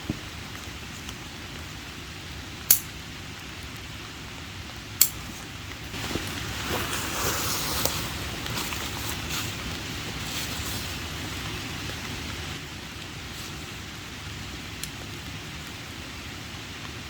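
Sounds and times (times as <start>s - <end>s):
fabric rustling: 5.1s - 11.6s.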